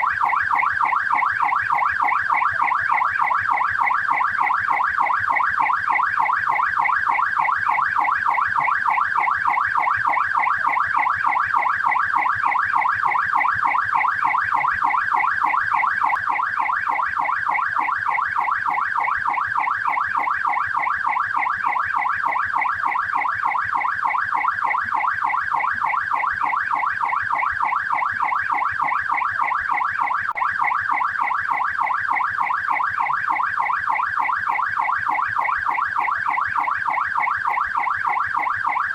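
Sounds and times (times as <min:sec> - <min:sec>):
police siren yelping: 0:00.0 - 0:38.9.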